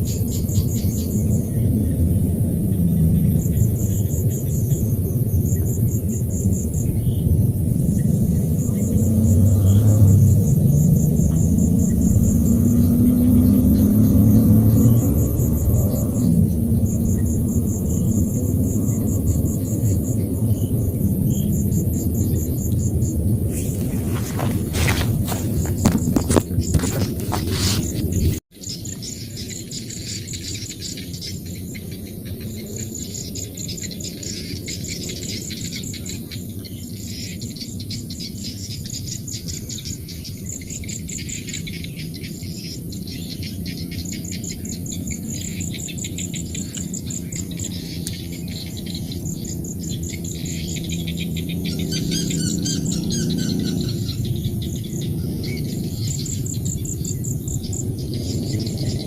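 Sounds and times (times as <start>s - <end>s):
frogs chorus: 0.0s - 59.0s
insects trilling: 0.0s - 59.0s
bird chirping: 43.2s - 59.0s.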